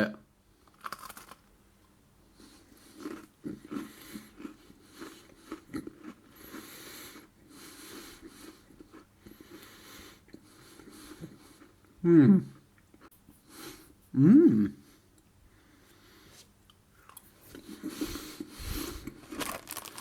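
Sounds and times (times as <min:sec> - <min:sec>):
chewing crunchy cookie: 0:00.6 - 0:12.0, 0:16.6 - 0:20.0
breathing through nose: 0:06.3 - 0:11.4, 0:17.7 - 0:19.2.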